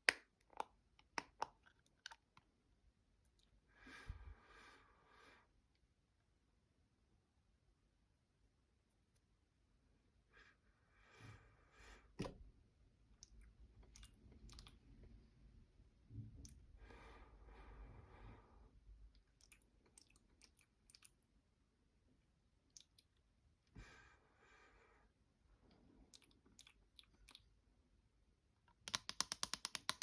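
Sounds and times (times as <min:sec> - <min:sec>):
fingernails clicking on containers: 0:28.9 - 0:30.0.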